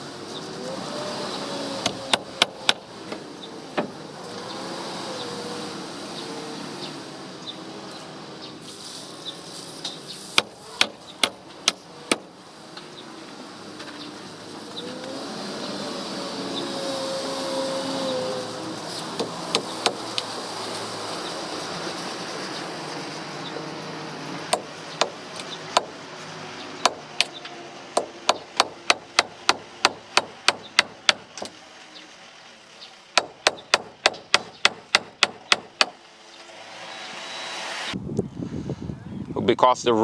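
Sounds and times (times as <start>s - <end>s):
hammer driving nails into wood: 1.8s - 3.2s, 10.4s - 12.3s, 19.2s - 20.2s, 24.5s - 26.0s, 26.8s - 27.4s, 28.0s - 31.6s, 33.2s - 36.0s.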